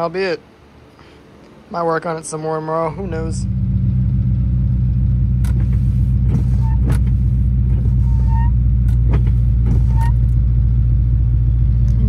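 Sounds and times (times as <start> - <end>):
car engine idling: 2.5 - 12.0.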